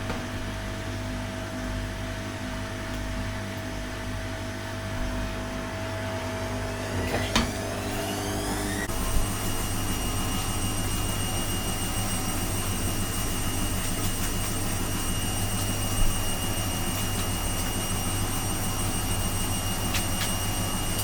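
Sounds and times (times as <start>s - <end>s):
electric motor humming: 5.4s - 13.7s.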